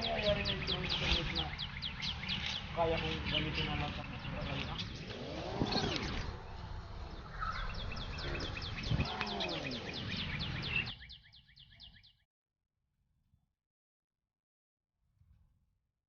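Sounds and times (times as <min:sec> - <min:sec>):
lower rising and falling calls: 0:00.0 - 0:12.1.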